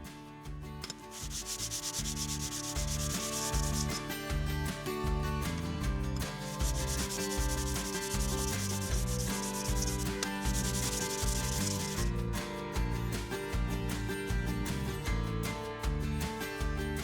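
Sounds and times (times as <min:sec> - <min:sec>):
background music: 0:00.0 - 0:17.0
plane iron rasping on sandpaper: 0:01.0 - 0:04.0, 0:06.3 - 0:12.1.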